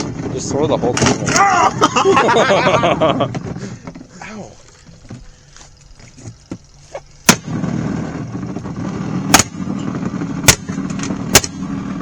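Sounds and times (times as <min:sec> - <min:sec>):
firecracker bangs: 0:07.2 - 0:11.8.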